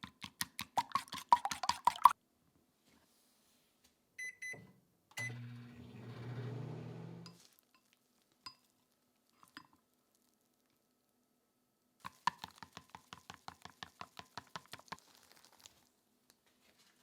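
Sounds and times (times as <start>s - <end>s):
microwave button beeps: 4.2s - 5.7s
microwave humming: 5.1s - 7.3s.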